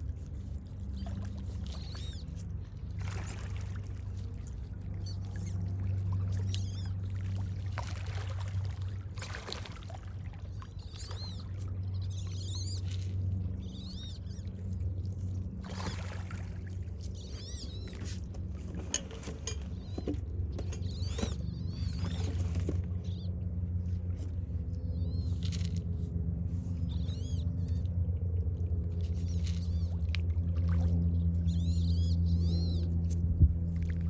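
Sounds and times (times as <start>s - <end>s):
steady low hum: 0.0s - 34.0s
water splashing and sloshing: 0.0s - 34.0s
birds chirping: 0.4s - 7.1s, 10.3s - 15.0s, 15.7s - 25.7s, 26.6s - 27.9s, 29.0s - 30.1s, 30.9s - 33.1s.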